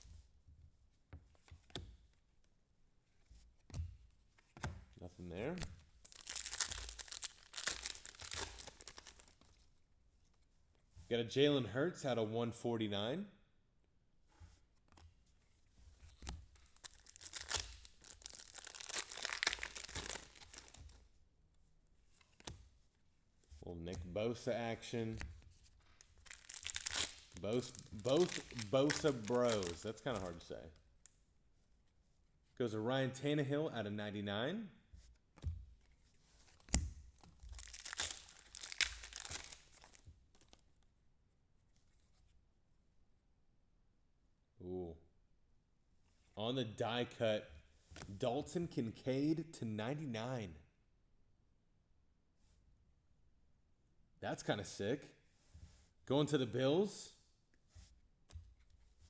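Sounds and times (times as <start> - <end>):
packaging crinkling and rustling: 6.0 - 9.4, 16.5 - 21.0, 25.9 - 30.5, 36.6 - 40.6.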